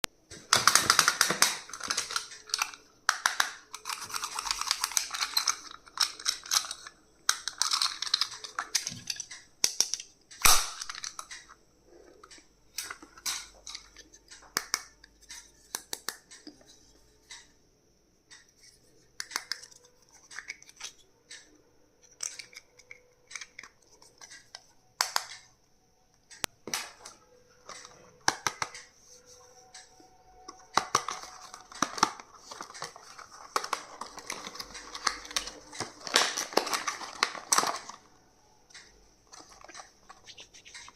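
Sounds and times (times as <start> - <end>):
plastic packaging crinkling: 0.4 - 9.4, 30.7 - 38.1.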